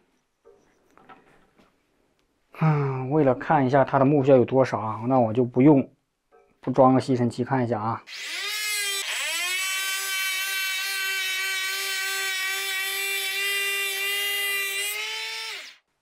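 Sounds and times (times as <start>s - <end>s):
electric planer whining: 8.1s - 15.8s.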